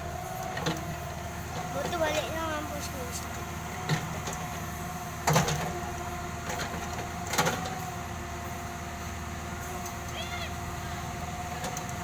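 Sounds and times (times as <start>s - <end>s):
engine running with whine: 0.0s - 12.0s.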